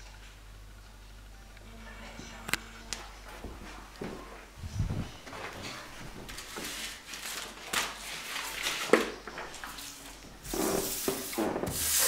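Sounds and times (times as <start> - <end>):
rustling and handling noises: 2.9 - 11.6.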